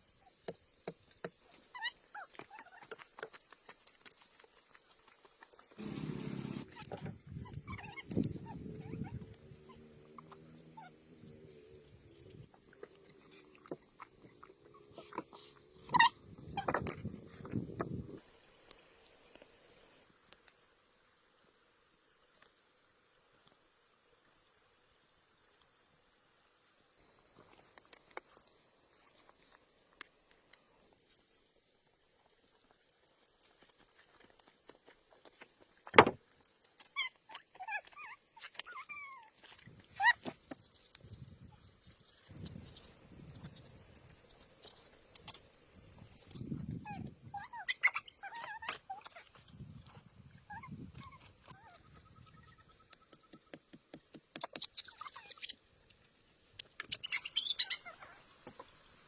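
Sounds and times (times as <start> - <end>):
animal squeaks and chirps: 46.8 - 49.3, 54.4 - 55.6, 56.8 - 58.2.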